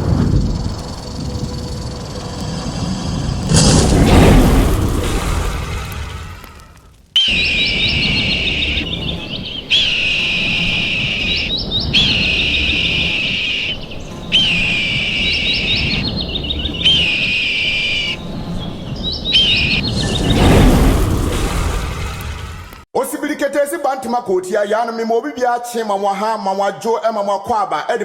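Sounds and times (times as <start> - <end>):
bird-like whistled calls: 7.2 - 20.5.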